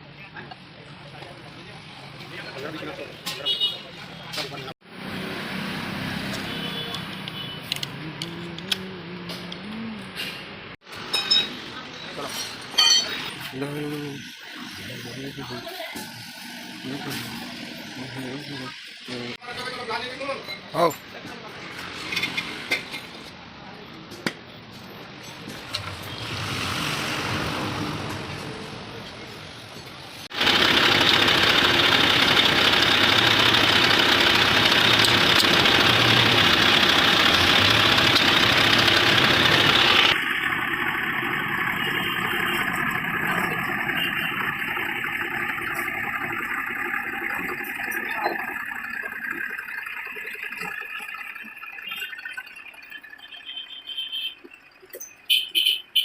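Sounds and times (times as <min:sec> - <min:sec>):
tractor engine running: 0:30.3 - 0:50.8.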